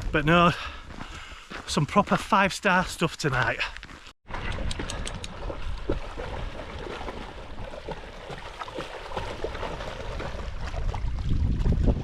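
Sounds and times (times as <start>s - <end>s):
wind buffeting microphone: 9.2s - 12.0s.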